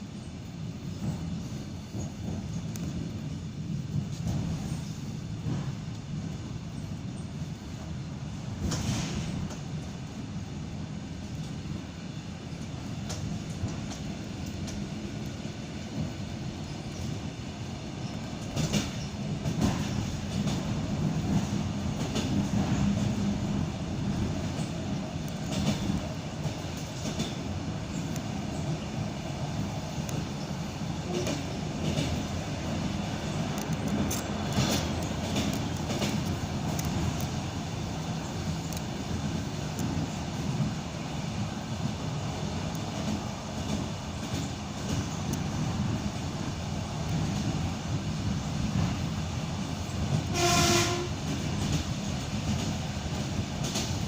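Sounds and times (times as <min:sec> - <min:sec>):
train running rumble: 0:00.0 - 0:54.0
wheels clacking over rail joints: 0:18.0 - 0:40.7.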